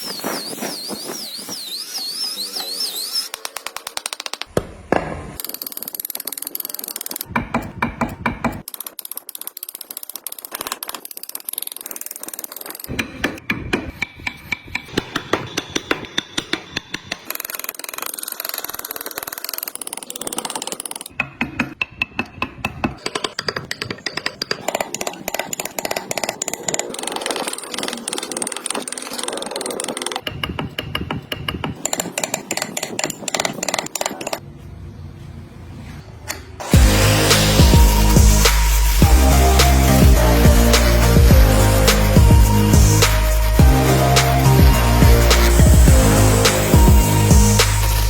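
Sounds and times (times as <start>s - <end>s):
hand carving tools on wood: 0.0s - 4.6s, 5.4s - 34.4s.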